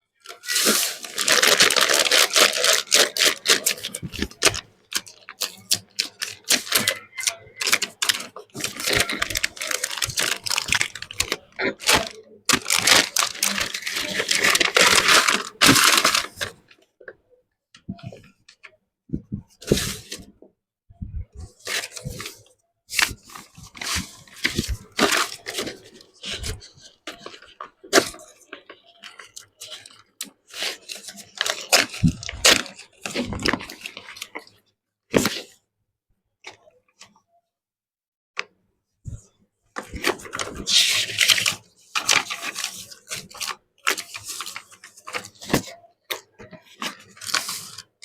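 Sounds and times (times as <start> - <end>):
plastic wrapper crinkling: 0.2 - 16.6, 23.0 - 34.4, 40.0 - 45.7.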